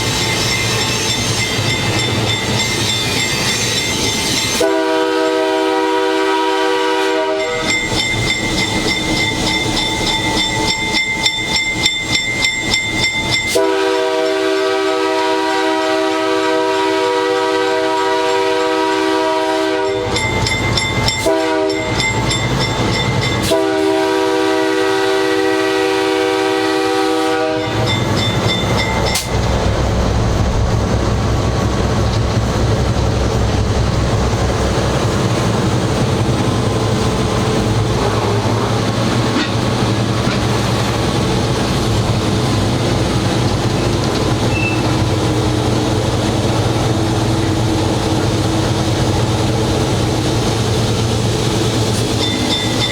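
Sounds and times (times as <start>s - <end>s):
locomotive air horn blasts: 3.9s - 8.0s, 13.5s - 20.3s, 21.1s - 22.0s, 23.2s - 28.0s.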